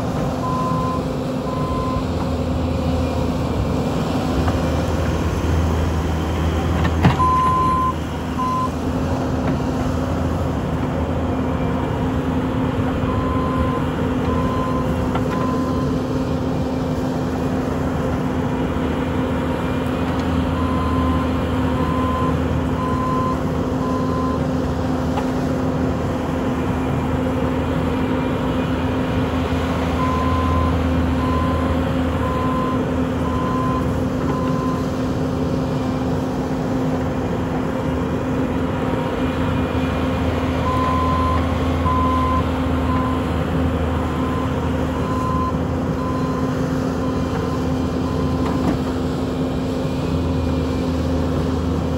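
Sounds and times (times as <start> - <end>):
diesel engine running: 0.0 - 51.9
backup alarm beeping: 7.2 - 8.7.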